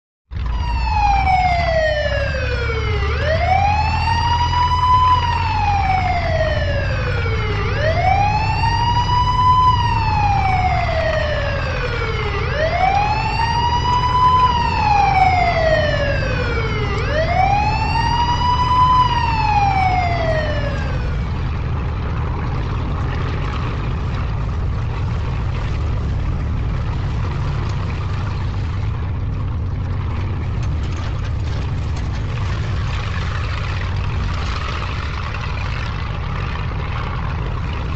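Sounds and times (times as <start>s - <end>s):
ambulance siren wailing: 0.3s - 22.6s
low engine rumble: 0.3s - 37.9s.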